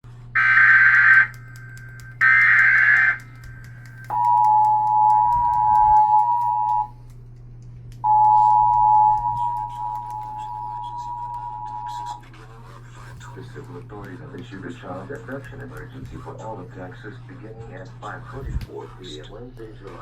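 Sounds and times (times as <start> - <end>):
low steady hum: 0.1 - 20.0
two-tone attention signal: 0.4 - 1.3, 4.0 - 6.9, 8.0 - 12.2
digital data bursts: 0.4 - 6.9.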